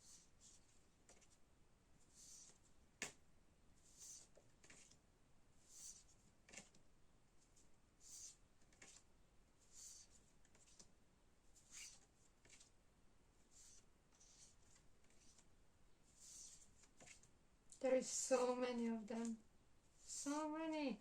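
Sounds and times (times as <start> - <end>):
playing cards being flipped: 11.7 - 12.7.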